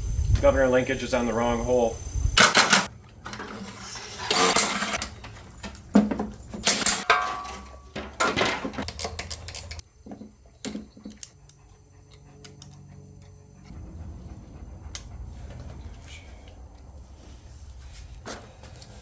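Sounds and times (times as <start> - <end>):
metal tools clinking and rattling: 2.4 - 11.5.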